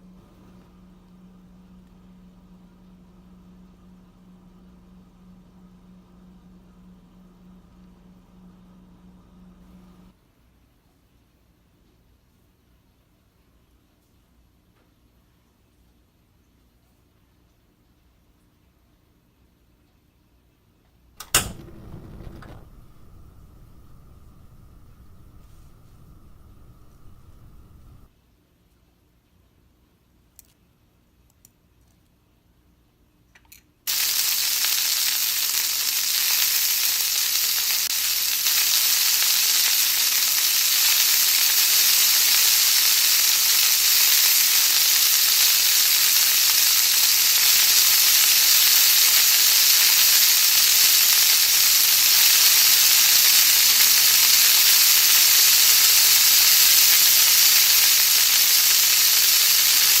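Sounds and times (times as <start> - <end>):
squid sizzling on hot plate: 33.9 - 60.0.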